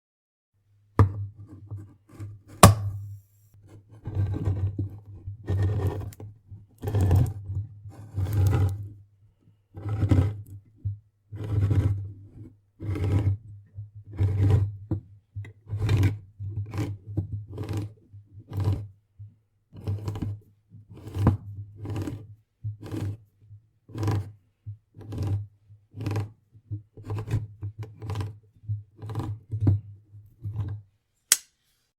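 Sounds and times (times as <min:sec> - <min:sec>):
can opener click: 0:02.6 - 0:03.0, 0:31.3 - 0:31.5.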